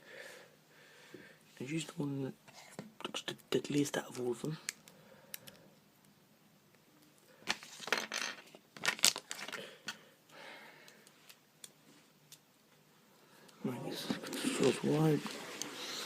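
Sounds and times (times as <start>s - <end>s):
plastic packaging rustling and clicking: 7.5s - 10.0s.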